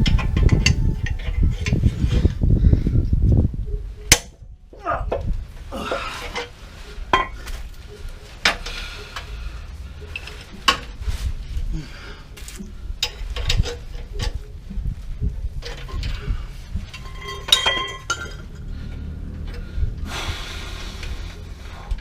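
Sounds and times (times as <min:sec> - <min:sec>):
low background rumble: 0:00.0 - 0:05.8.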